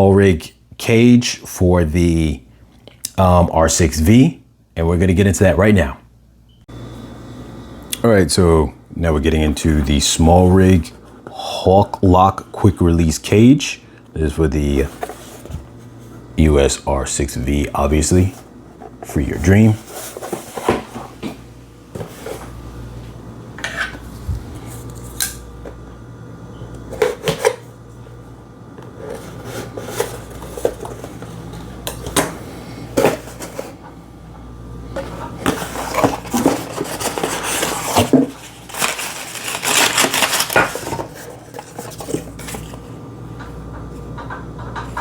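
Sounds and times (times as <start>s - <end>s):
packaging rustling: 35.0s - 42.9s.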